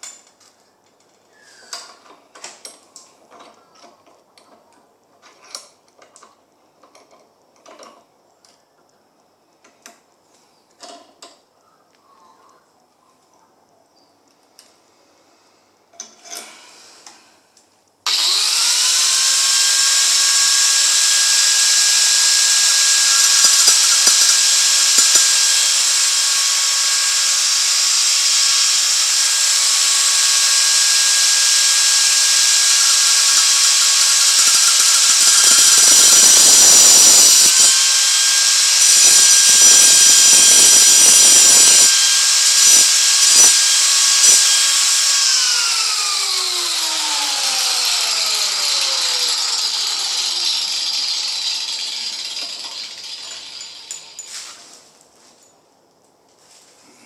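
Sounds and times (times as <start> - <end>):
power grinder whining: 18.1 - 54.5
grinder cutting into bolt: 18.1 - 54.6.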